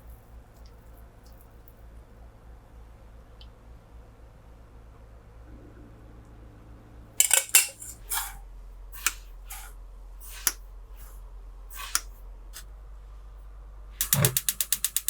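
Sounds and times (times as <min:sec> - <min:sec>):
dishware clattering: 0:07.2 - 0:08.4.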